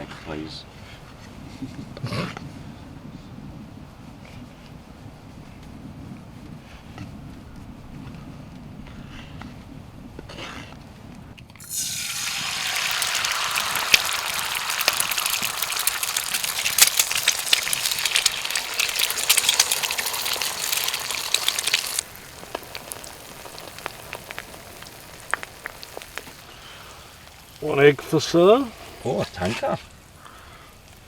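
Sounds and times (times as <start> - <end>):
eggs sizzling in a pan: 11.6 - 29.3
scattered ticks and patter: 13.0 - 27.7.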